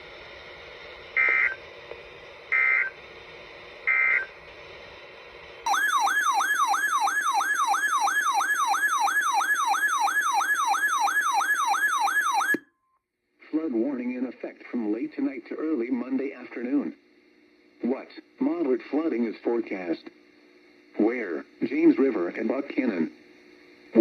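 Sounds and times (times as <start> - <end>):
warbling siren-like alert tone: 5.7 - 12.6.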